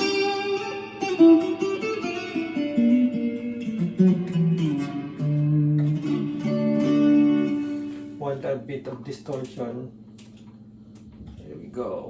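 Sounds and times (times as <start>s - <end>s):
clean electric guitar: 0.0s - 8.2s.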